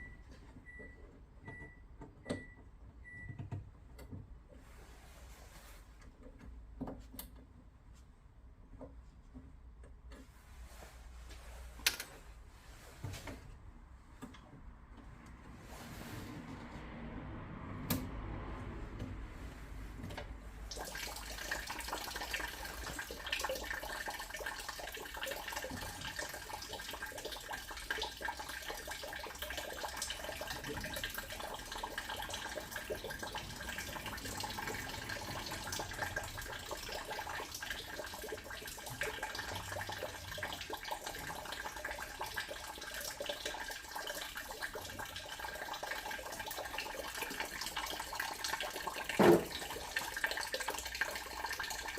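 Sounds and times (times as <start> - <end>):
water running: 20.6 - 51.9.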